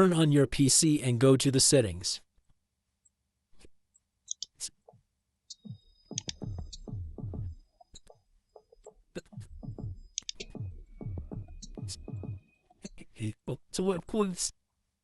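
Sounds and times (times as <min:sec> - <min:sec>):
sharp clicks: 0:04.3 - 0:04.6, 0:05.5 - 0:06.9, 0:10.2 - 0:10.6
electronic music with deep beat: 0:05.5 - 0:13.0.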